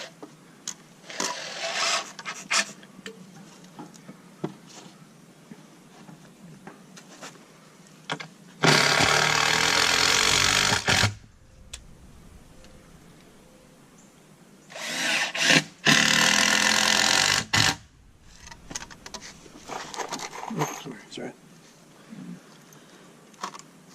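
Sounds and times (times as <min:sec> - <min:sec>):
power drill running: 0:08.6 - 0:11.4, 0:14.7 - 0:20.3.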